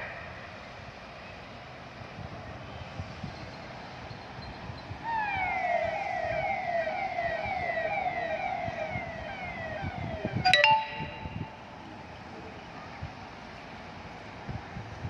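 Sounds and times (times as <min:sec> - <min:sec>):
police siren fast wail: 0:05.0 - 0:10.9
steady tone: 0:05.2 - 0:11.8.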